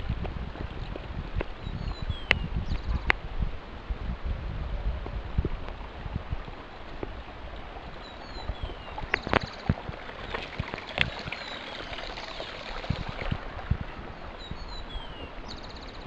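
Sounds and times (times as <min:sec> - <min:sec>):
running water rushing: 0:00.0 - 0:16.0.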